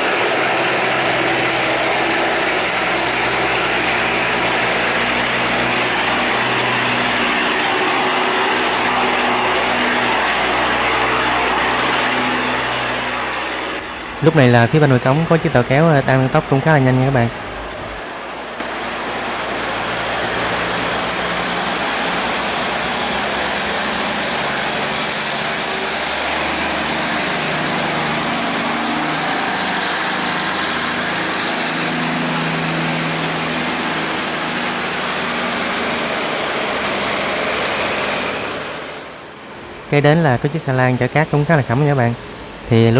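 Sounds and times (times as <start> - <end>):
diesel boat engine droning: 0.0 - 42.9.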